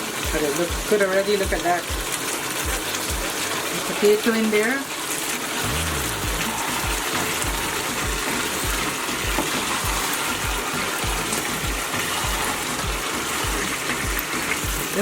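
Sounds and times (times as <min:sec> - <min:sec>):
food sizzling in a pot: 0:00.0 - 0:15.0
background music with low beat: 0:02.7 - 0:03.4, 0:05.6 - 0:15.0.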